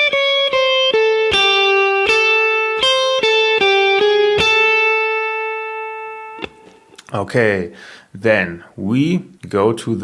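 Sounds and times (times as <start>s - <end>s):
guitar playing single notes: 0.0s - 7.2s.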